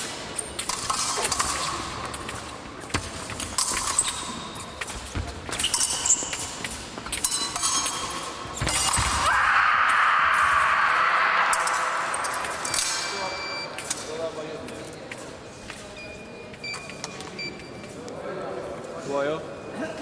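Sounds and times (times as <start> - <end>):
footwork thumping: 2.0 - 7.3, 8.1 - 9.3.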